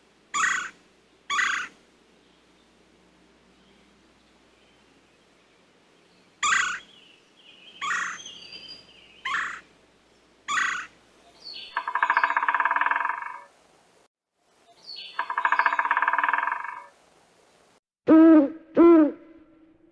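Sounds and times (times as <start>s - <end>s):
bird calling: 0.4s - 1.8s, 6.4s - 6.9s, 7.8s - 9.6s, 10.5s - 13.6s, 14.7s - 17.0s.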